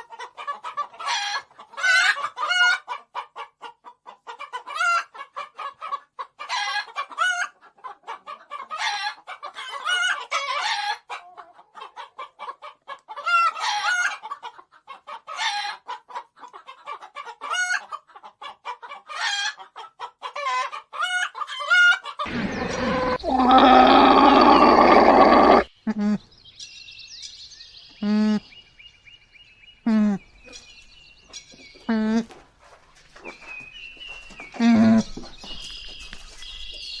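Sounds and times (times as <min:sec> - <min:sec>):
chicken clucking and cackling: 0:00.0 - 0:26.2.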